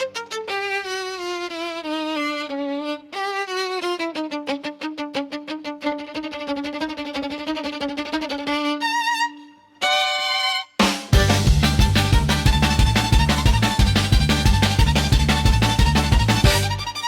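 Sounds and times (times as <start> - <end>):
quick rhythmic accompaniment: 10.8 - 17.0
jazz melody with vibrato: 11.2 - 16.9.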